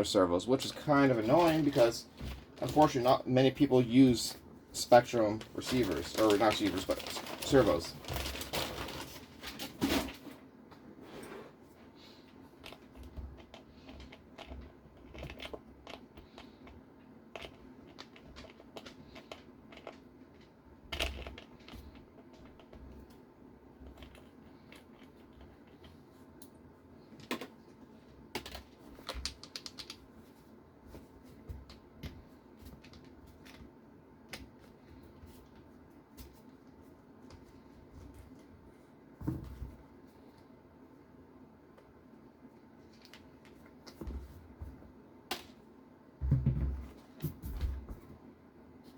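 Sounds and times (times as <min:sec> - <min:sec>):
faint steady hum: 0:00.0 - 0:48.9
small parts clicking and rustling: 0:05.0 - 0:10.1, 0:12.2 - 0:23.2, 0:23.8 - 0:30.4.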